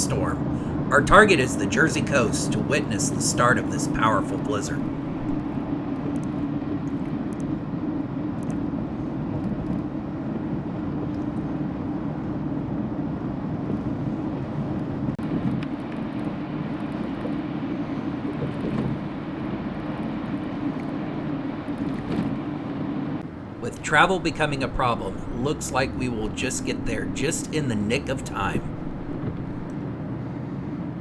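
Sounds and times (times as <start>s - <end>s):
car road and engine noise: 0.0s - 5.7s, 23.2s - 31.0s.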